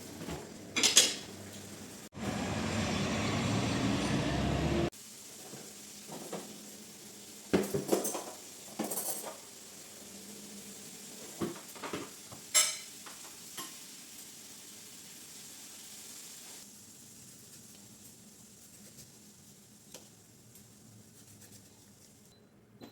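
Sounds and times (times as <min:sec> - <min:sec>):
food sizzling in a pan: 0:00.0 - 0:02.6, 0:04.8 - 0:22.3
utensil clinking against cookware: 0:12.5 - 0:12.9.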